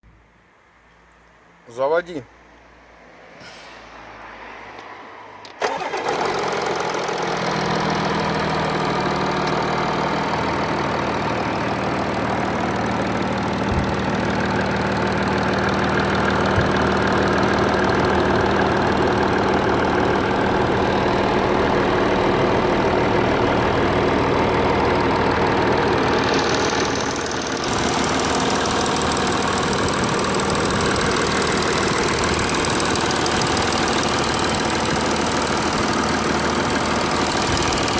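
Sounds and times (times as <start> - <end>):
vehicle engine starting and idling: 5.4 - 37.9
rattle: 13.4 - 21.0, 25.2 - 37.9.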